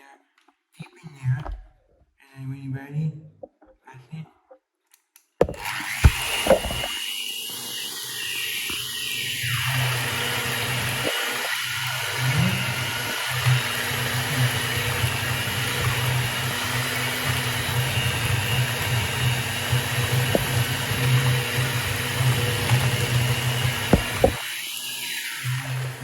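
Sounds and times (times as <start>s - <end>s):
electric kitchen mixer running: 5.4s - 26.0s.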